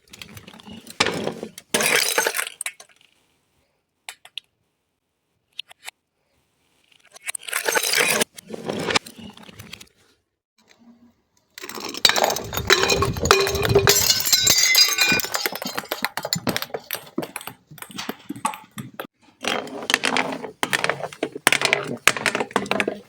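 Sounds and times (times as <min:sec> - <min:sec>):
glass crushing and breaking: 0:01.0 - 0:02.8, 0:11.6 - 0:19.1.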